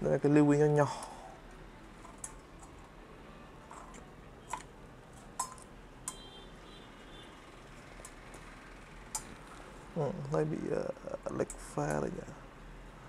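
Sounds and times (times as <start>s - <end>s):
sharp clicks of cooler parts: 3.7s - 6.3s.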